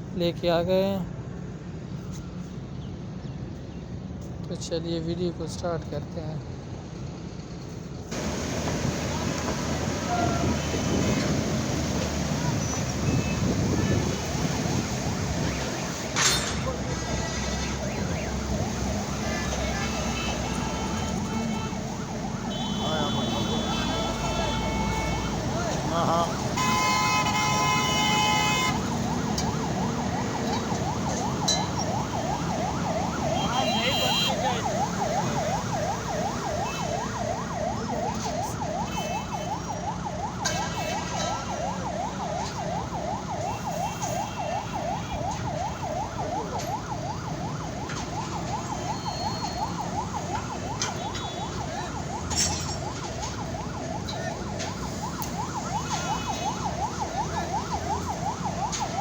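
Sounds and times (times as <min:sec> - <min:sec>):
heavy engines rumbling: 0:03.9 - 0:59.0
warbling warning alarm: 0:08.1 - 0:59.0
horn: 0:19.2 - 0:21.9, 0:22.5 - 0:26.0.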